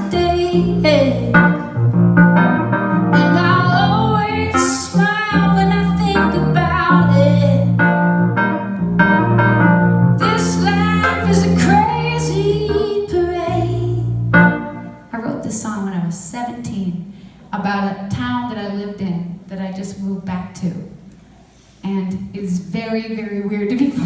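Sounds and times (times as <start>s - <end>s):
woman singing: 0.0s - 1.8s, 3.2s - 7.8s, 10.2s - 14.2s
keyboard and bass chords: 0.0s - 15.0s.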